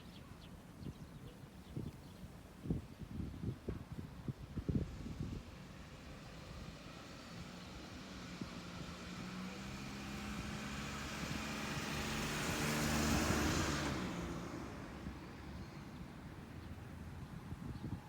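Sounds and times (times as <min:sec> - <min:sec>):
vehicle passing engine and tyres: 0:04.4 - 0:17.9.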